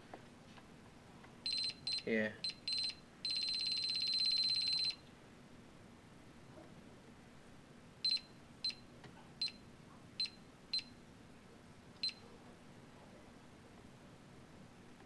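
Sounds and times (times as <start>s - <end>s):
multimeter short high beeps: 1.5s - 5.0s, 8.1s - 8.8s.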